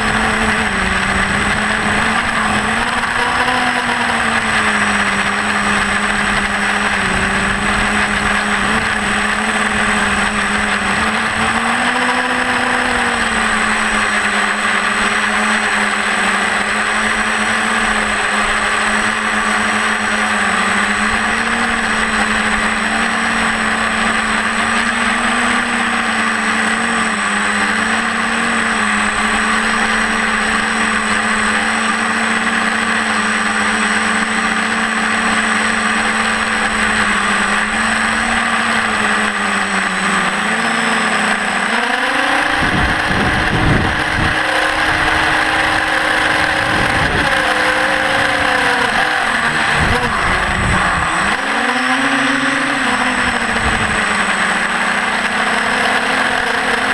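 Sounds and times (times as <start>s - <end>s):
electric motor and propeller hum: 0.0s - 56.9s
wind buffeting microphone: 42.6s - 47.4s, 49.5s - 51.4s.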